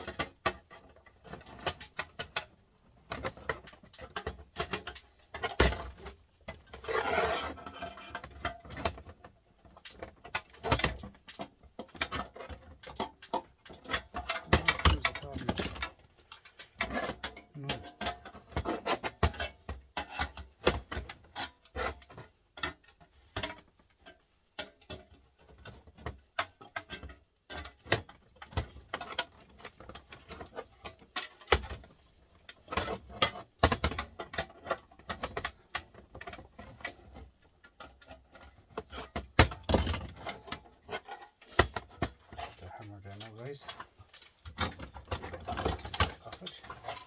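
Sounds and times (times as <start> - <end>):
printer parts clicking and scraping: 24.6 - 47.0.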